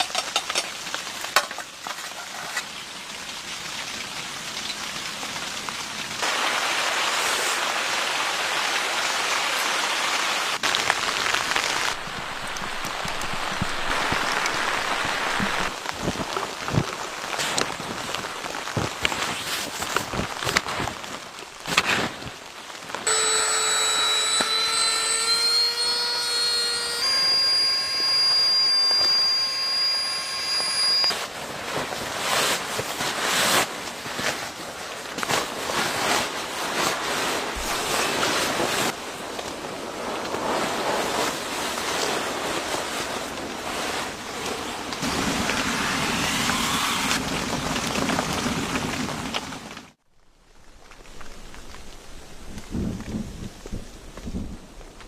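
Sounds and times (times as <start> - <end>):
high whistling tones: 23.1 - 31.2.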